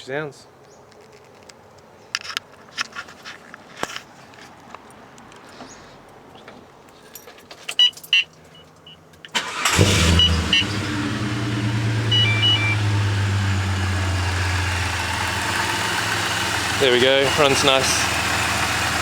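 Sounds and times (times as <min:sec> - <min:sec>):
car engine starting and idling: 0:09.3 - 0:19.0
short beeps: 0:12.1 - 0:12.9
two-tone electronic beep: 0:12.1 - 0:12.9.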